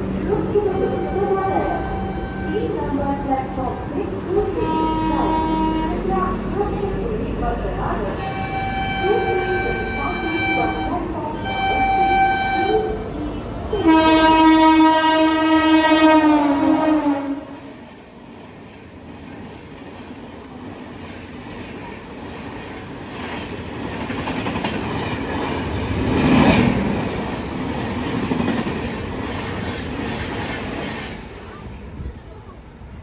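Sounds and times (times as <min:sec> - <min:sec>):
locomotive horn blast: 0:00.6 - 0:03.0, 0:04.5 - 0:06.4, 0:08.2 - 0:17.8
train wheels clacking on rails: 0:18.3 - 0:32.1.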